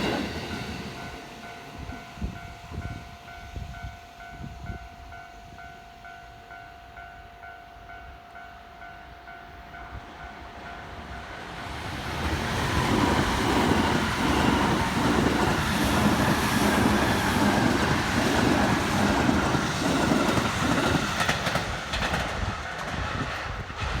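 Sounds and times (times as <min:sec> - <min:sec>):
level-crossing warning bell: 0:00.4 - 0:11.7, 0:12.4 - 0:21.6
train wheels clattering on rails: 0:09.8 - 0:24.0.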